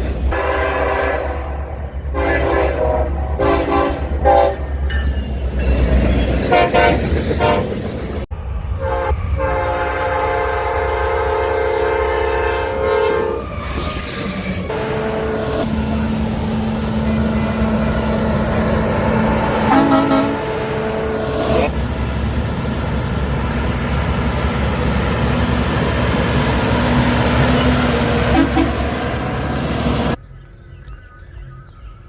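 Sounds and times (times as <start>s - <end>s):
train rumbling past: 0.0s - 30.2s
locomotive horn blasts: 0.3s - 4.8s, 6.5s - 7.8s, 8.8s - 13.5s, 14.7s - 21.8s, 26.8s - 30.2s.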